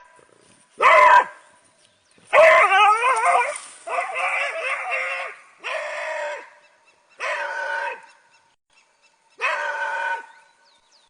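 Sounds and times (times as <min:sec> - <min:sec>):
dog barking: 0:00.8 - 0:01.4, 0:02.3 - 0:05.0, 0:09.4 - 0:09.8
dog howling: 0:02.4 - 0:06.5.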